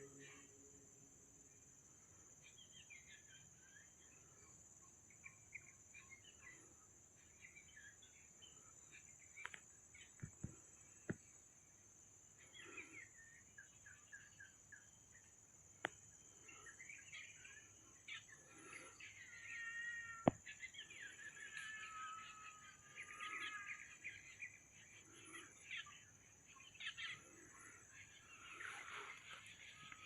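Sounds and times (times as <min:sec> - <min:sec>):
high-pitched insect drone: 0:18.5 - 0:24.4.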